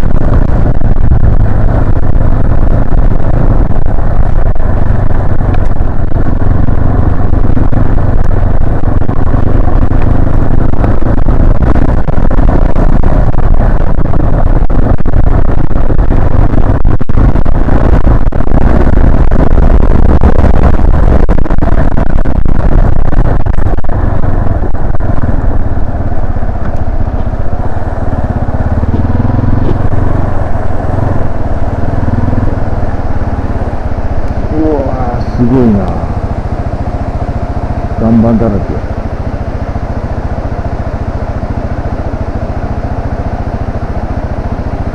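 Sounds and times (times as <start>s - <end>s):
motorcycle engine running: 0.0s - 44.9s.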